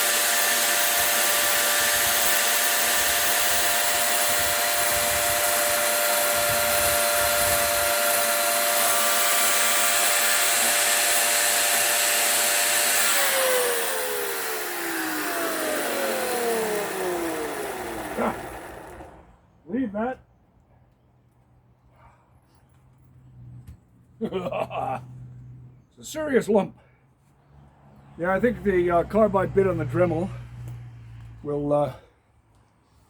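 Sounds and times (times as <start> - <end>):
power tool motor whining: 0.0 - 19.4.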